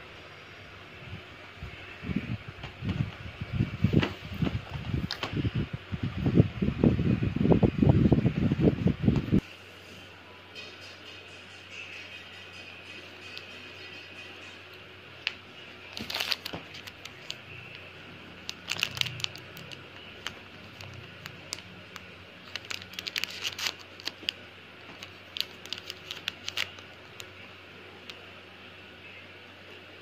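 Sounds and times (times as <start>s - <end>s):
crinkling and rustling material: 15.2s - 27.4s.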